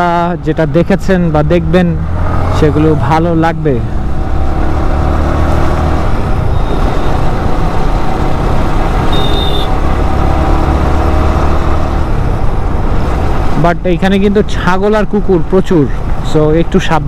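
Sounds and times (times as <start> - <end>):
vehicle engine running: 1.2 - 13.6.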